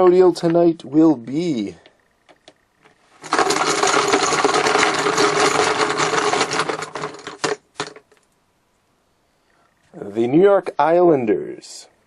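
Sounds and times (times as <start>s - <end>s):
rattling clatter of small objects: 3.1s - 8.3s.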